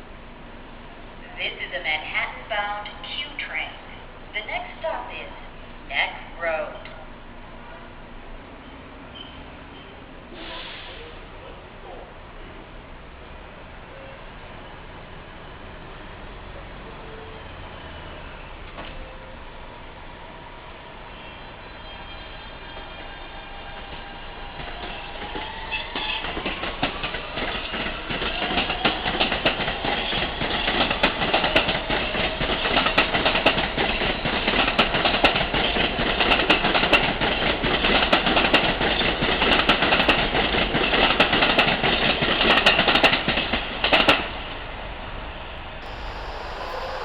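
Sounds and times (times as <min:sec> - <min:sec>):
train motor whine: 0:45.6 - 0:47.0.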